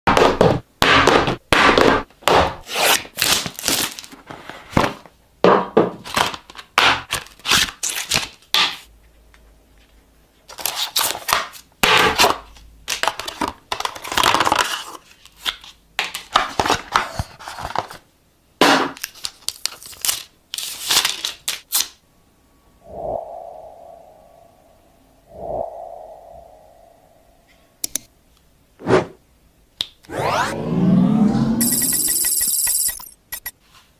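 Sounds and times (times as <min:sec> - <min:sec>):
plastic film tearing and crinkling: 0:02.7 - 0:04.2.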